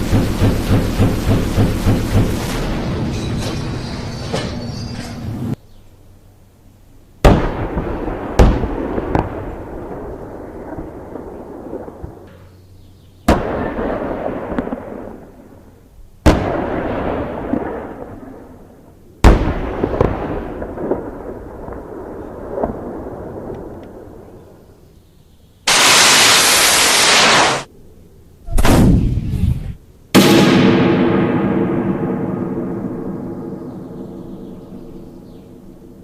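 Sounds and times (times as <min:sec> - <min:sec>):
sharp shots: 0:00.0 - 0:03.2, 0:25.7 - 0:27.7, 0:28.5 - 0:33.0
heavy gunshots echoing: 0:00.0 - 0:03.3, 0:13.3 - 0:15.3, 0:16.3 - 0:18.2, 0:25.7 - 0:27.7, 0:28.5 - 0:36.0.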